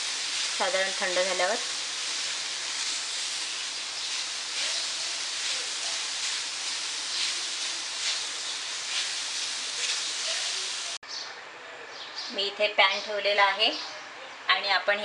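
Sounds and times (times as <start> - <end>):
vegetables sizzling on hot pan: 0.0 - 11.0
faint stirring strokes: 1.7 - 11.0.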